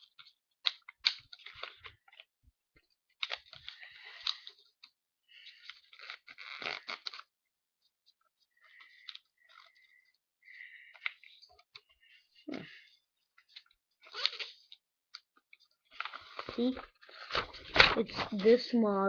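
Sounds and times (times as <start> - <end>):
paper crinkling: 0.0 - 2.3, 3.1 - 10.1, 10.9 - 18.7.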